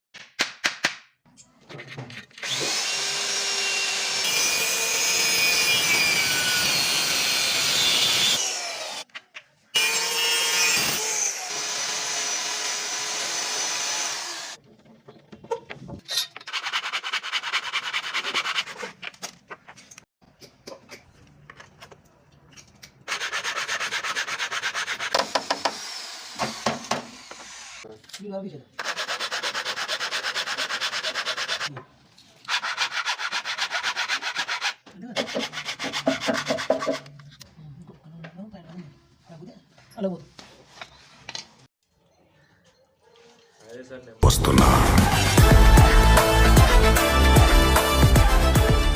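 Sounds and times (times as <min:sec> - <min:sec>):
tool cutting or scraping wood: 0:01.6 - 0:14.6, 0:15.7 - 0:20.1, 0:23.1 - 0:27.9, 0:28.8 - 0:37.4.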